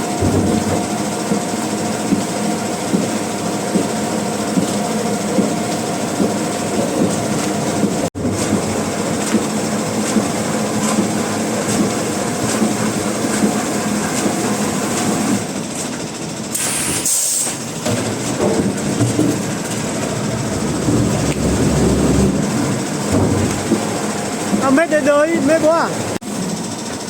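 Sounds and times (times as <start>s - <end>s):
sawmill machinery rattling: 0.0s - 27.0s
brief hiss: 16.5s - 17.6s.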